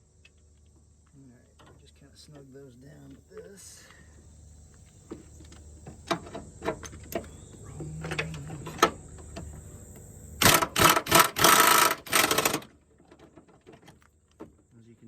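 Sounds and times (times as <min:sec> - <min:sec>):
impact wrench rattling: 0:10.4 - 0:12.7.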